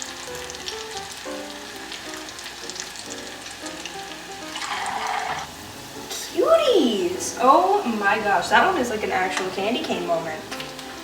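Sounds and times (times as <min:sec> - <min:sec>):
dough sizzling in hot oil: 0:00.0 - 0:11.0.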